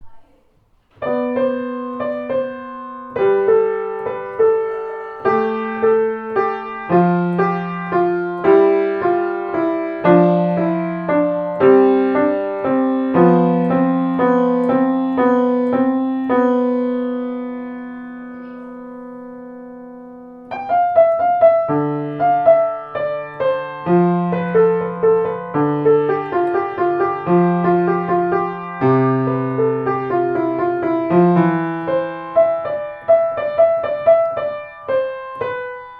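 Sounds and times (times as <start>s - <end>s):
solo piano music: 0.0s - 35.9s.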